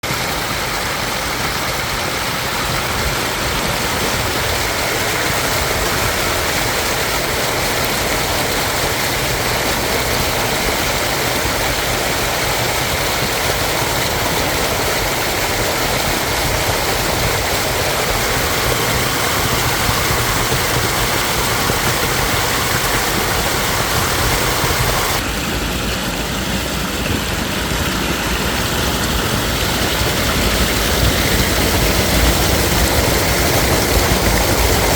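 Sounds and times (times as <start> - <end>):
stream babbling over stones: 0.0 - 34.9.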